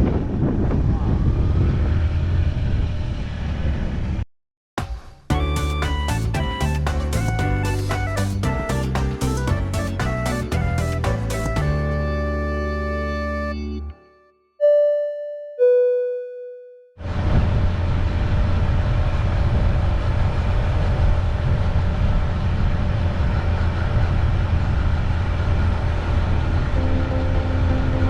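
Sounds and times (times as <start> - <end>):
descending two-note chime: 5.3 - 16.8, 26.8 - 28.0.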